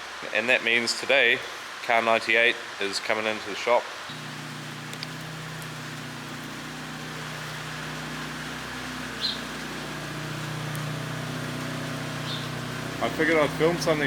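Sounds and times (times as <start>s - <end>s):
vehicle engine idling: 4.1s - 14.0s.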